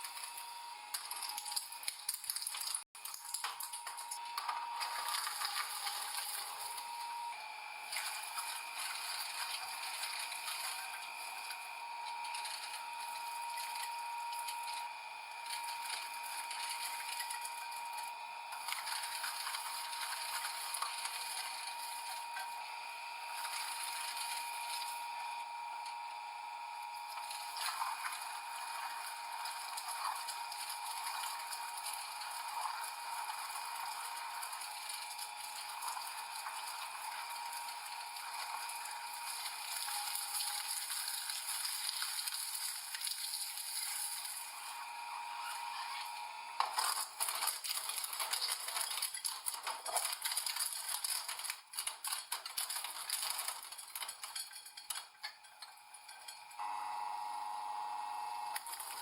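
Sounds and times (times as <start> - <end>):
machine hum: 0.0 - 54.3
machine crushing with sharp cracks: 0.9 - 6.8, 46.6 - 55.3.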